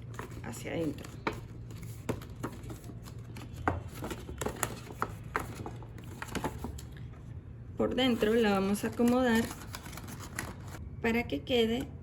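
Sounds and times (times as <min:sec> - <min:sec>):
cardstock being folded: 0:00.0 - 0:07.0, 0:08.1 - 0:10.8.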